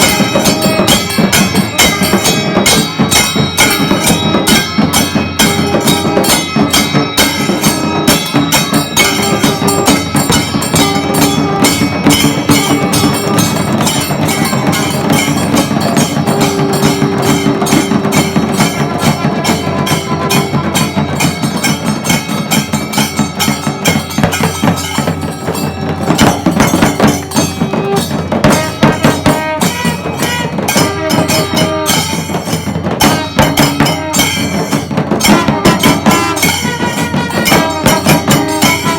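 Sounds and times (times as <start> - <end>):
clashing cymbals: 0.0 - 38.9
fast dense drumming: 0.0 - 38.9
long held notes: 9.0 - 21.8.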